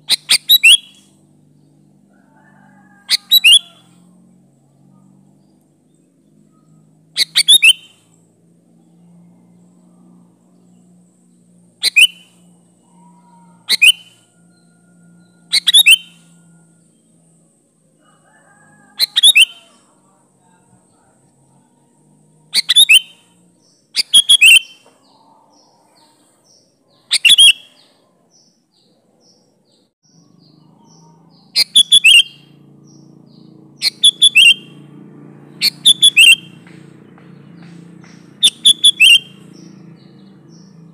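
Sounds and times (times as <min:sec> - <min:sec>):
bulbul calling: 0:00.0 - 0:01.1, 0:03.1 - 0:03.8, 0:06.6 - 0:08.1, 0:11.7 - 0:14.6, 0:15.2 - 0:16.3, 0:18.9 - 0:19.8, 0:22.5 - 0:26.1, 0:27.0 - 0:28.5, 0:30.7 - 0:34.8, 0:35.5 - 0:36.9, 0:37.6 - 0:40.9.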